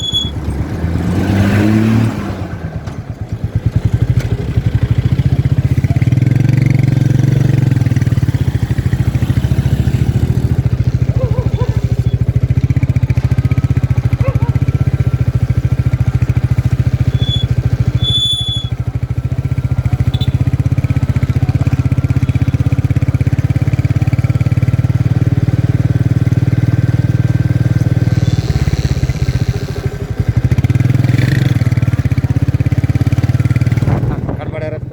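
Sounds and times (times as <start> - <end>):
high squeaks: 0.0 - 0.6, 16.9 - 18.8, 28.1 - 30.1
motorcycle engine thumping: 2.6 - 34.6.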